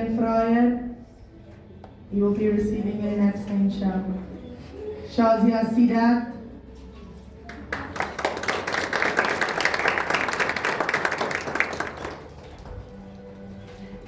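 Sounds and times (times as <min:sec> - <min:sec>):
audience applauding: 0:07.5 - 0:12.8.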